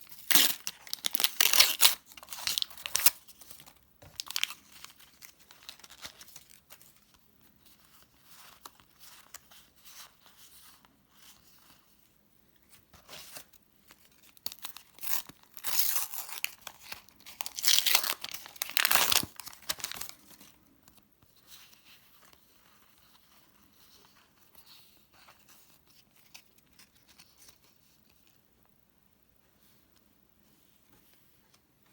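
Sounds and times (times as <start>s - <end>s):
sticker packets tearing: 0.1s - 3.2s
wrappers crinkling: 0.2s - 3.2s, 14.4s - 20.2s.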